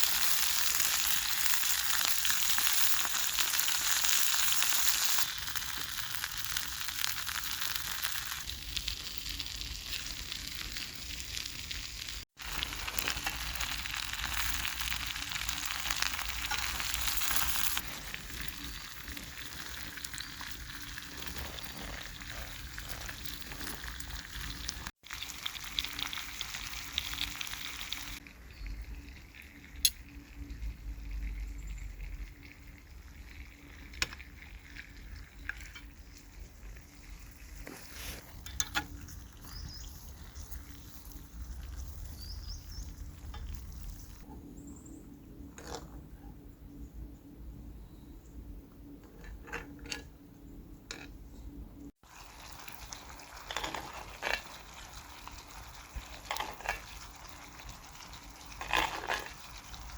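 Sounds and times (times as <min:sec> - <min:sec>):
steak sizzling in a skillet: 0:00.0 - 0:28.3, 0:52.0 - 0:59.9.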